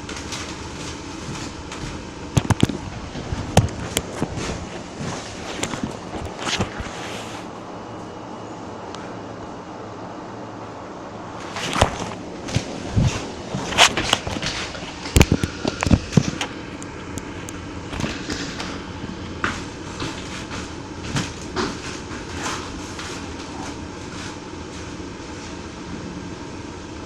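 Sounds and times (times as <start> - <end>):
knocks and clatter: 0.0 - 6.9, 11.4 - 24.4
steady background hum: 0.0 - 27.0.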